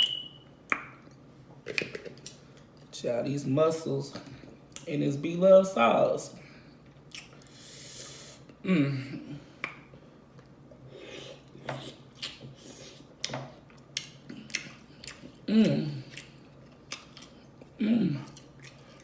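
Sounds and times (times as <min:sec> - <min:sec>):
wet chewing and lip smacking: 0:07.0 - 0:07.5, 0:13.2 - 0:15.4, 0:16.1 - 0:19.0
person humming mm: 0:07.6 - 0:09.4, 0:15.5 - 0:16.1, 0:17.8 - 0:18.3.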